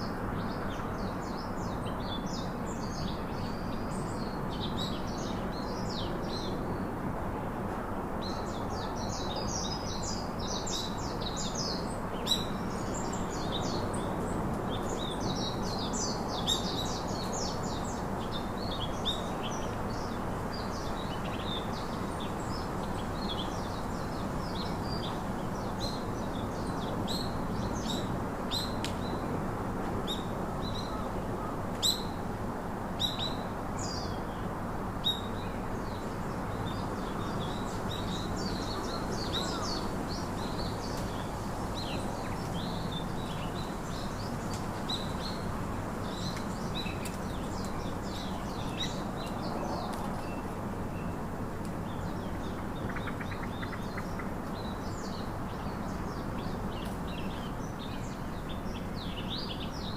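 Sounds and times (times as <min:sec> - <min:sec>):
steady background hiss: 0:00.0 - 0:59.9
small birds chirping and trilling: 0:08.2 - 0:29.2, 0:33.0 - 0:59.9.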